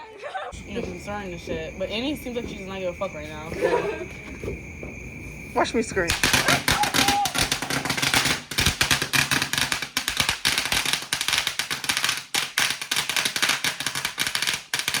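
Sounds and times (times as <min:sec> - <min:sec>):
fireworks crackling: 0:00.5 - 0:15.0.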